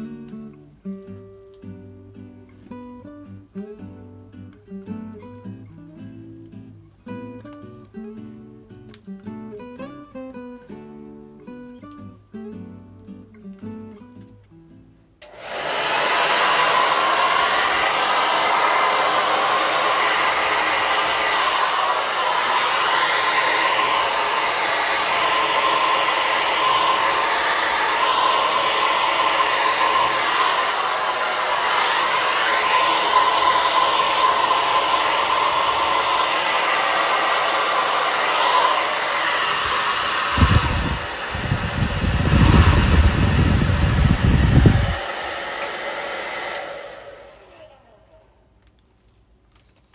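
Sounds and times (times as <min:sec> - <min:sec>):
hair dryer blowing: 0:15.2 - 0:48.3.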